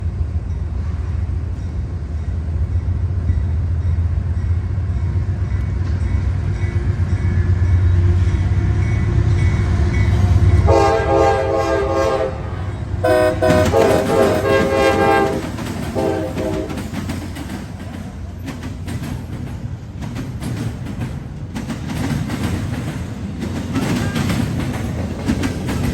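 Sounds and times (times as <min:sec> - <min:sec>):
freight train rumbling: 0:00.0 - 0:25.9
locomotive horn blasts: 0:10.6 - 0:16.9.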